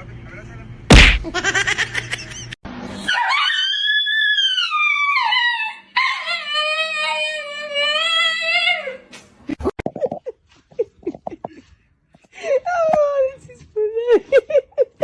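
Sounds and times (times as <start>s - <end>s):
dog howling: 3.1s - 9.0s.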